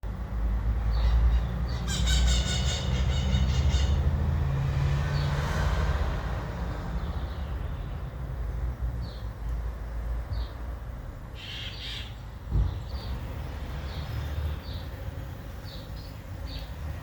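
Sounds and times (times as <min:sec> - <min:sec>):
bird squawking: 0:01.0 - 0:04.0, 0:11.4 - 0:12.2.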